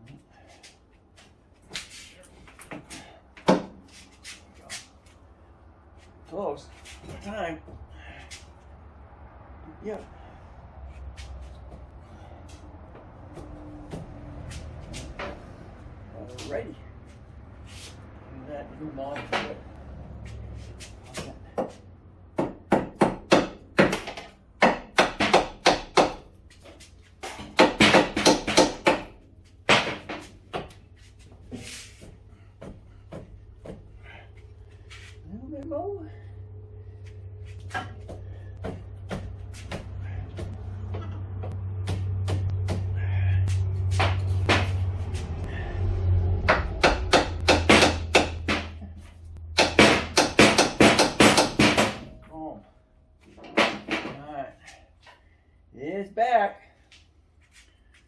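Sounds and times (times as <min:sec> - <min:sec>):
low hum: 0:30.8 - 0:50.2
hammer striking metal: 0:46.4 - 0:48.8, 0:49.5 - 0:52.2.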